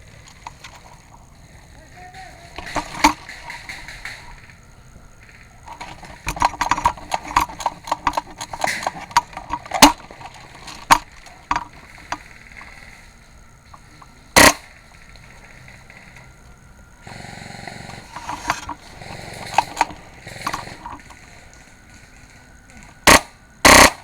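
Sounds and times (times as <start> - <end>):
airsoft gun shots: 2.1 - 4.6, 14.4 - 14.8, 23.0 - 24.0.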